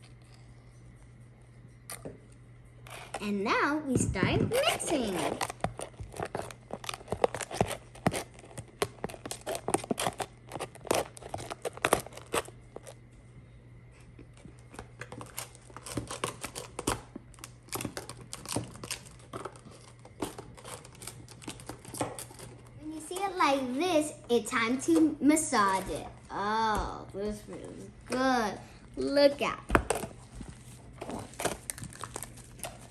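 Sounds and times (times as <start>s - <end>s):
slime stirred in a bowl: 2.8s - 13.1s, 14.0s - 22.7s.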